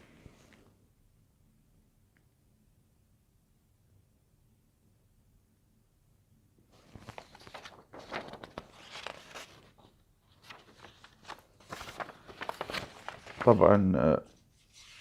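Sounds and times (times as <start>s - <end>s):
paper rustling: 6.7s - 15.0s.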